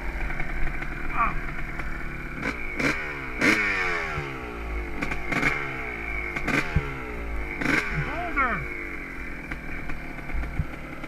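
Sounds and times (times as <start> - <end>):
two-stroke engine revving: 0.0 - 11.0.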